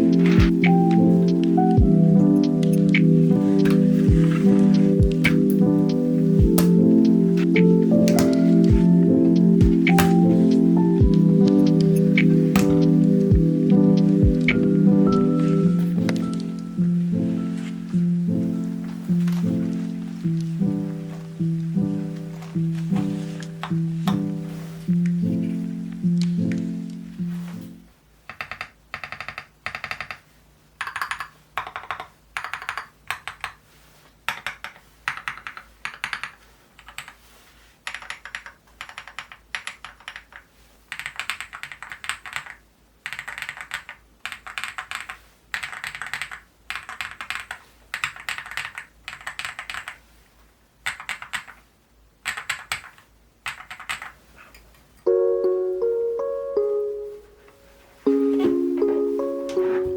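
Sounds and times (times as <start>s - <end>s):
mechanical keyboard typing: 9.6s - 10.4s, 28.3s - 30.2s, 30.8s - 33.6s, 34.3s - 37.2s, 37.8s - 50.0s, 50.8s - 51.6s, 52.2s - 54.2s.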